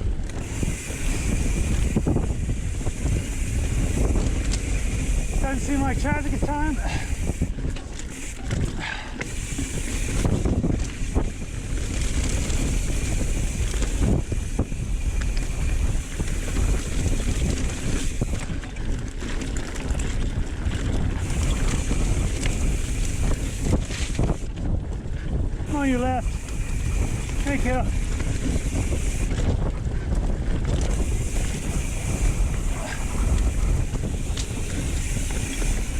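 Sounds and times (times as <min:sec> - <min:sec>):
bike knocks and rattles: 0:00.0 - 0:35.9
wind buffeting microphone: 0:00.0 - 0:35.9.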